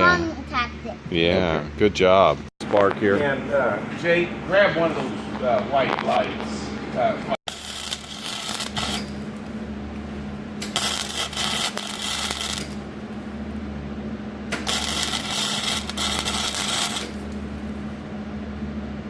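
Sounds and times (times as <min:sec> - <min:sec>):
steady low hum: 0:00.0 - 0:19.0
arc welder crackling: 0:07.5 - 0:13.7, 0:14.4 - 0:18.0.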